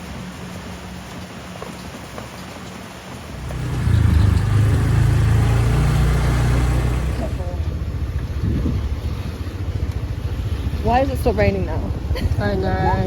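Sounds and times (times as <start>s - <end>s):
rain hiss: 0.0s - 12.4s
wind buffeting microphone: 0.0s - 13.0s
motor scooter rumbling: 0.9s - 13.0s.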